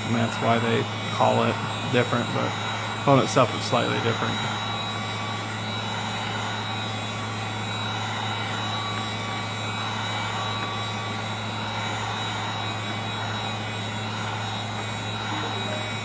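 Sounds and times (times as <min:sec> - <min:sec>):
heat gun blowing hot air: 0:00.0 - 0:16.0.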